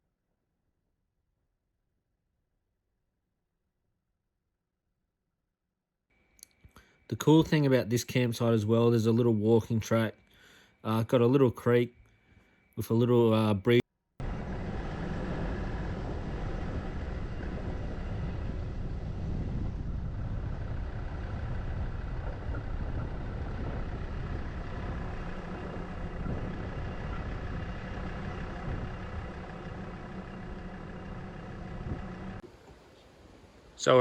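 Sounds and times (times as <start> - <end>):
vehicle engine running: 14.2 - 32.5.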